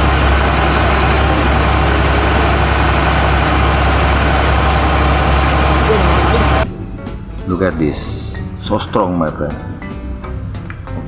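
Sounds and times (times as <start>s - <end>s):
motor humming: 0.0s - 6.7s.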